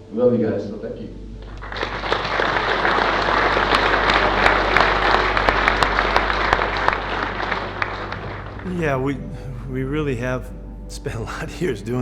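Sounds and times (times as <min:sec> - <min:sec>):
crowd applauding: 0:01.4 - 0:09.0.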